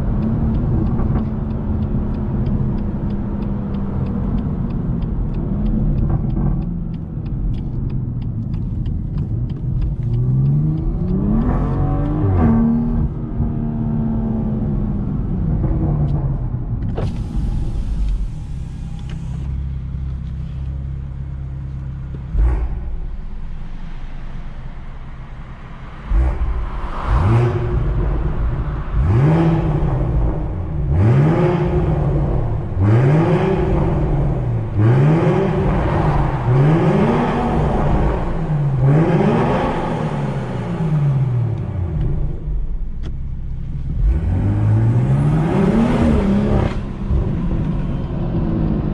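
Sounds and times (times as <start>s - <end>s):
exhaust cracks: 0.0s - 48.9s
engine revving: 9.9s - 15.0s, 22.1s - 24.8s, 25.9s - 42.5s, 43.7s - 48.9s
car engine idling: 16.4s - 39.1s.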